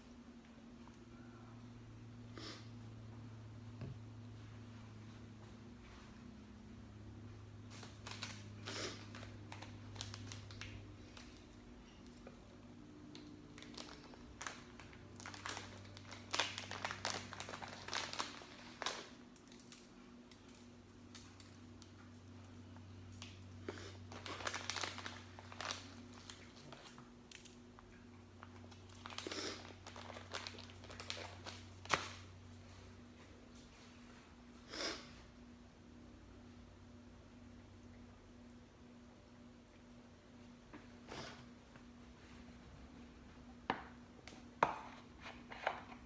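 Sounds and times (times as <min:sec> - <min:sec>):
low steady hum: 0:00.0 - 0:46.0
aluminium foil crinkling: 0:07.7 - 0:12.3, 0:13.1 - 0:32.3.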